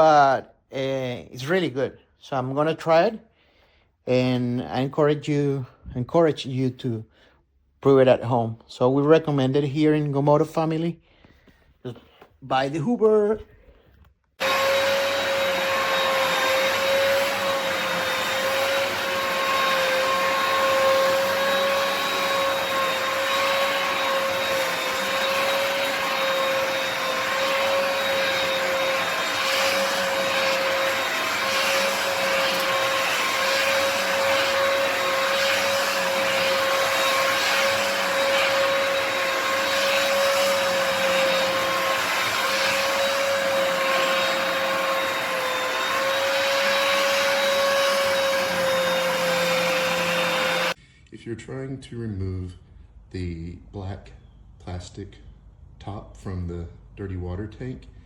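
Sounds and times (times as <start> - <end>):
carpet cleaner motor whine: 14.4 - 50.8.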